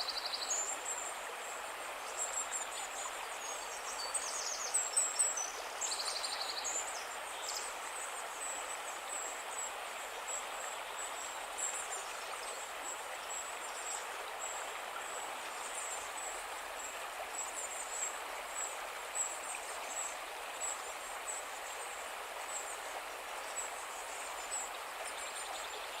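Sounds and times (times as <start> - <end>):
river water rushing: 0.0 - 26.0.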